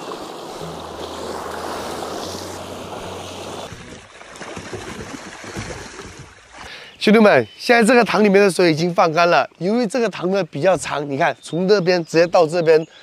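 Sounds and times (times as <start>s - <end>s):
water rushing out of pond: 0.0s - 7.0s.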